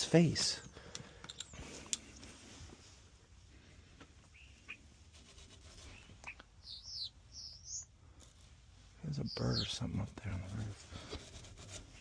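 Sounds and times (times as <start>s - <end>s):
bird chirping: 4.2s - 4.9s, 5.7s - 8.0s, 9.0s - 10.6s.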